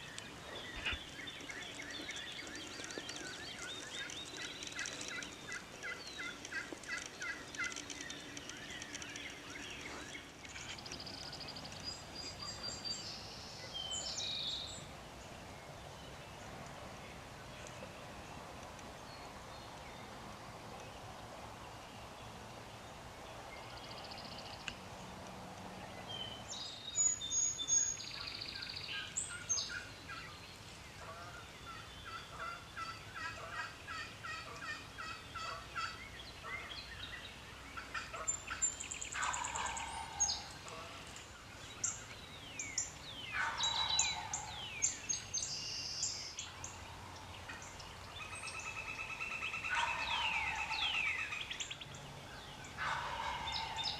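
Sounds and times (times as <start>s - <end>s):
songbirds chirping: 0.0s - 53.9s
turkey gobbling: 37.8s - 38.3s, 39.2s - 40.8s, 43.3s - 44.5s, 49.6s - 50.9s, 52.8s - 53.9s.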